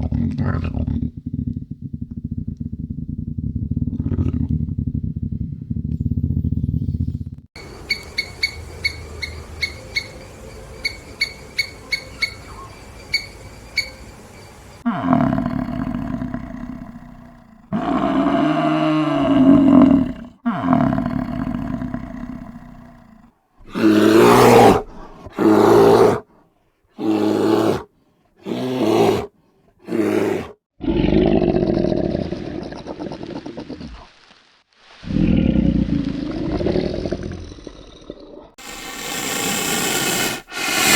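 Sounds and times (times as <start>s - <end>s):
big cat roaring: 0.0s - 6.9s, 14.8s - 26.2s, 27.0s - 34.1s, 35.0s - 40.9s.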